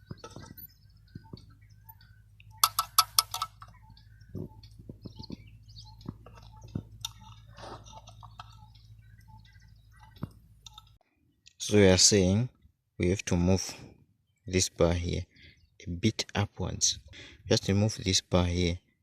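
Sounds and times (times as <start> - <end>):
metal clinking on metal: 2.6 - 4.1.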